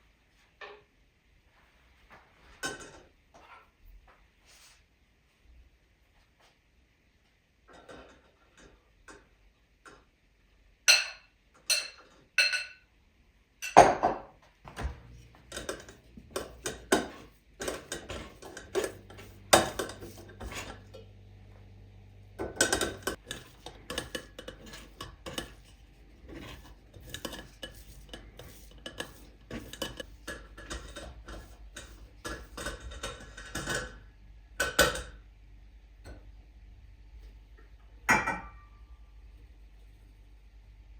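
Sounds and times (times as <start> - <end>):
dishes and utensils clinking: 2.6 - 3.6, 10.9 - 12.9, 13.6 - 21.1, 22.4 - 34.0, 38.1 - 38.7
steady low hum: 14.7 - 40.9.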